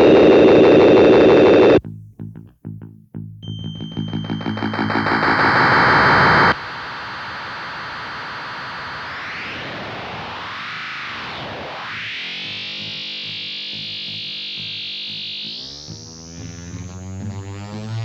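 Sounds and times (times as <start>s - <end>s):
pulsing electronic drone: 3.5s - 8.0s.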